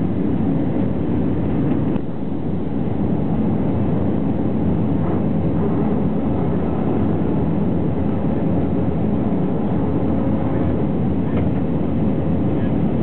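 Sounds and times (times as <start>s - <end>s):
jet engine rumble in cabin: 0.0s - 13.0s.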